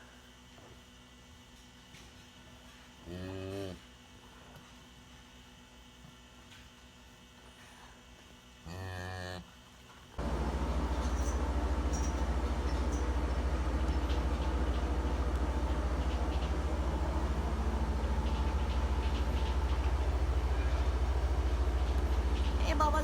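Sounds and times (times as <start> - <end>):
engine running: 10.2 - 23.0.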